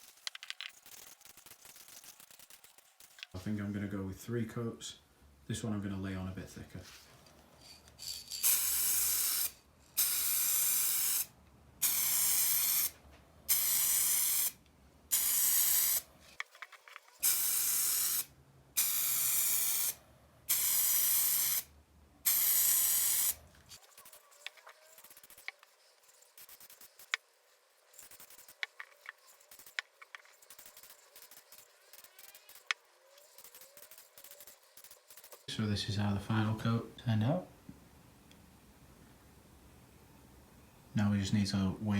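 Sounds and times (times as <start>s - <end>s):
spray can hissing: 8.3s - 16.1s, 17.2s - 35.5s.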